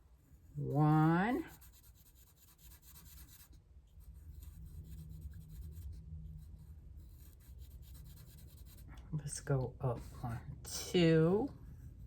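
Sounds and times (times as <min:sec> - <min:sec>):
marker pen scratching on paper: 0:00.6 - 0:09.4.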